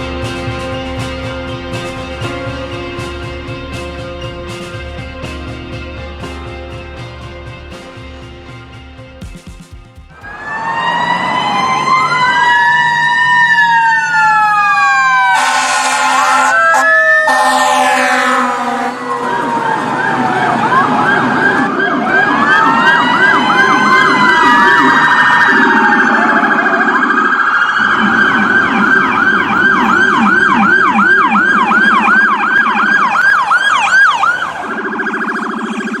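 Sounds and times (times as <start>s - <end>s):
high sweeping siren tone: 10.1s - 36.0s
low warbling siren tone: 10.2s - 36.0s.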